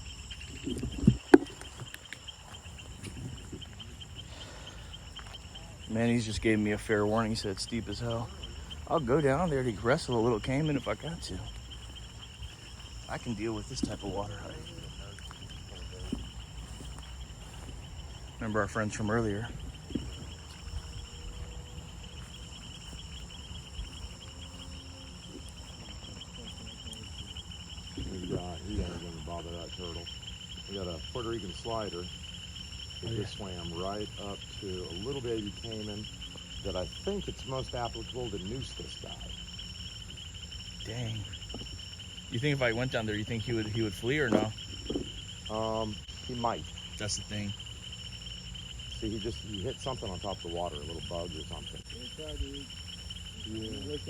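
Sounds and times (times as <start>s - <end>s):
crickets trilling: 0.0s - 54.0s
night insects chorus: 0.0s - 54.0s
sharp knocks: 44.2s - 45.2s.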